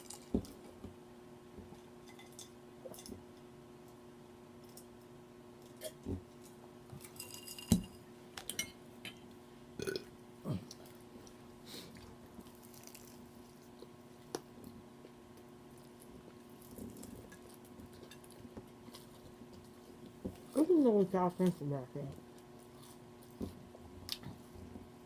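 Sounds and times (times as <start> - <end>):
woman burping: 9.8 - 10.7
chewing and mouth sounds: 9.8 - 20.2, 22.4 - 24.5.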